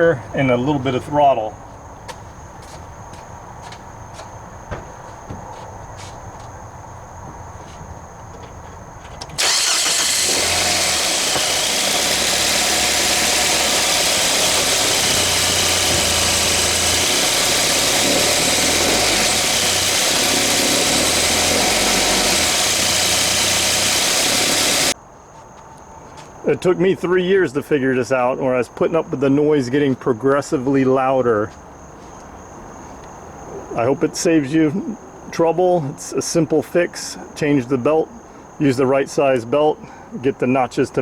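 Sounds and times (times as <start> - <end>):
petrol engine running: 9.4 - 25.0.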